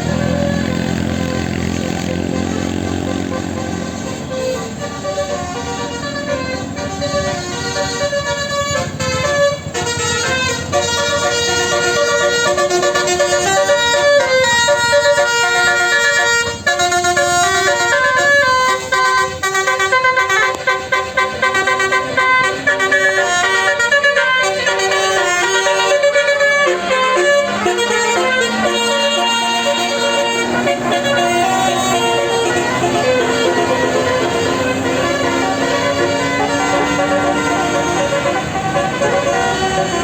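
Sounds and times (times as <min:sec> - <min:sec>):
bus engine rumble: 0:00.0 - 0:40.0
musical bus horn melody: 0:00.0 - 0:40.0.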